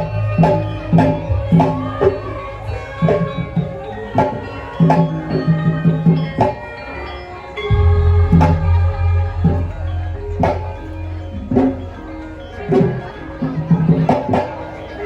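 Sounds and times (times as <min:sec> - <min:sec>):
ringing struck metal tones: 0:07.5 - 0:15.0
deep sustained low tone: 0:07.7 - 0:13.2
drum strokes: 0:07.7 - 0:14.6.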